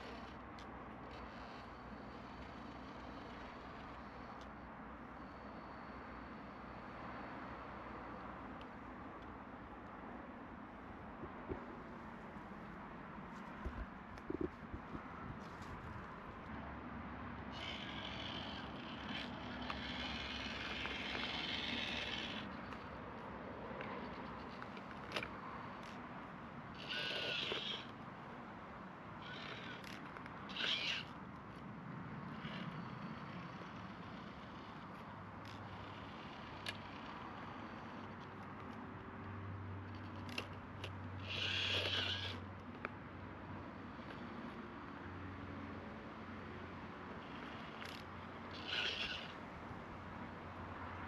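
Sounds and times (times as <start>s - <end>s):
electric motor and gearbox whining: 0.0s - 9.4s, 17.4s - 38.8s, 39.8s - 42.9s, 47.0s - 50.3s
short rasping burst: 17.5s - 22.9s, 26.8s - 28.0s, 29.2s - 31.2s.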